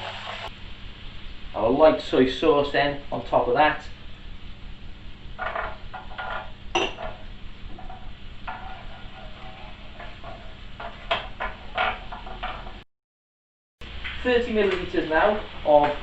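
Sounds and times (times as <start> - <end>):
utensil scraping frying pan: 0.0 - 0.5, 5.3 - 12.8
low steady hum: 0.0 - 12.8.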